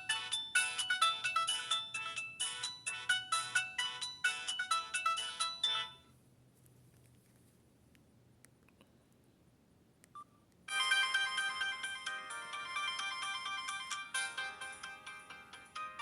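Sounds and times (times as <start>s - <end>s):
phone ringtone melody: 0.0s - 6.0s, 10.7s - 16.0s.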